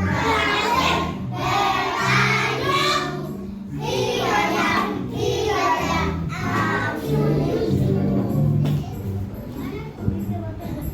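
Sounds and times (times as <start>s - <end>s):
children singing together: 0.0s - 8.6s
musical accompaniment: 0.0s - 10.9s.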